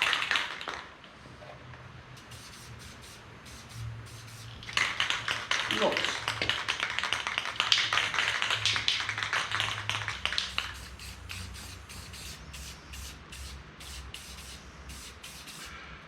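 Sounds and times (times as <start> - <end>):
aerosol spray can hissing: 2.2 - 7.5, 8.2 - 15.7.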